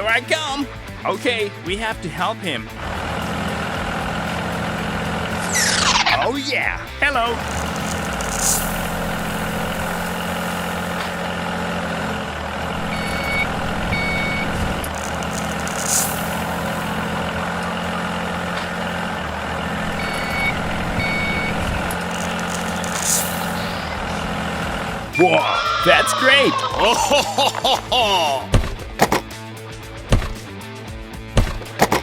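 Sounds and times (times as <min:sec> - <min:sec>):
heavy vehicle engine running: 0:02.4 - 0:25.4
air hiss: 0:07.5 - 0:11.0
reversing alarm beeps: 0:12.8 - 0:14.9, 0:19.8 - 0:22.4, 0:25.1 - 0:26.4.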